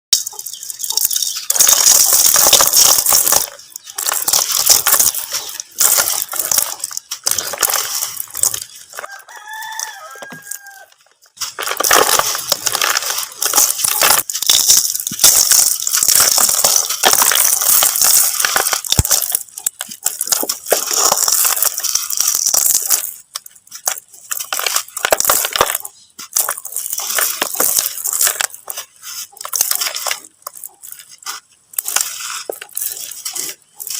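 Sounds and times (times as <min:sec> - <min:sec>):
mud crumbling and crunching: 0:00.2 - 0:33.9
chicken calling: 0:08.7 - 0:11.3.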